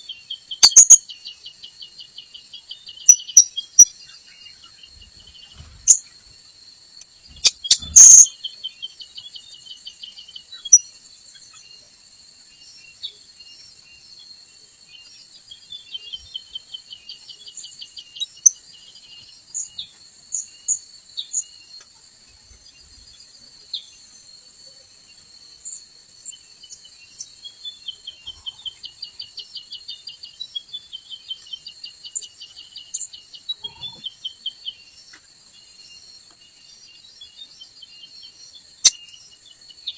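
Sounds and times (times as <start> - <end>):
short high bird chirps: 0.6 - 1.0, 7.4 - 8.3.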